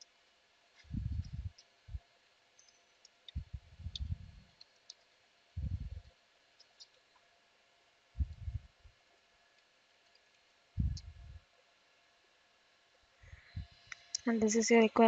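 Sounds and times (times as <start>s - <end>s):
soft low thumps: 0.8s - 2.0s, 3.3s - 4.5s, 5.6s - 6.0s, 8.2s - 8.9s, 10.8s - 11.4s.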